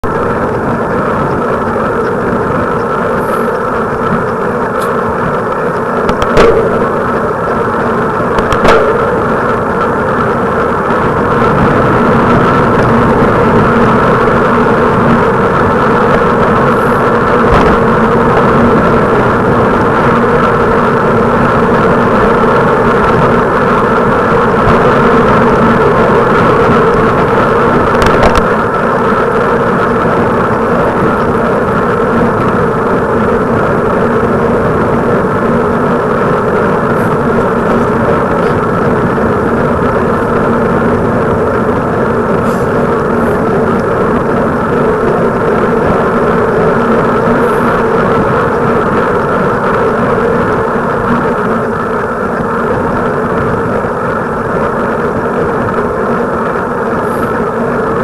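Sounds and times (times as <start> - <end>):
steady mechanical drone: 0.0 - 58.0
sharp knocks: 6.1 - 7.2.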